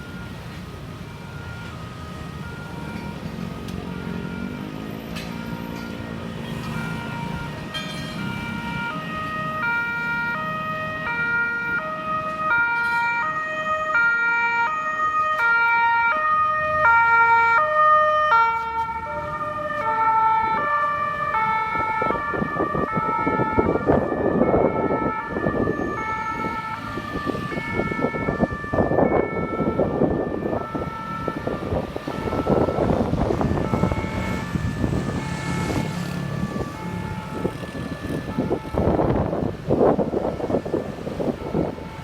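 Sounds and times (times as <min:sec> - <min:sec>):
road and engine noise: 0:00.0 - 0:42.0
two-tone ambulance siren: 0:00.0 - 0:42.0.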